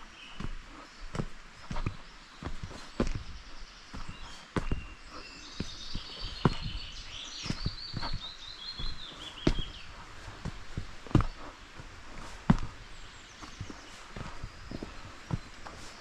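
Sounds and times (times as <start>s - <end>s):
footsteps walking: 0.0s - 16.0s
songbird trilling: 0.1s - 16.0s.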